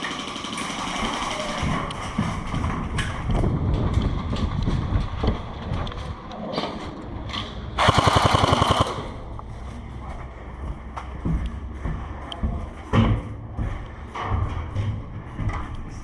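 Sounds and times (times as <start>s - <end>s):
airsoft gun shots: 7.8s - 9.2s
full-auto airsoft burst: 7.8s - 9.2s.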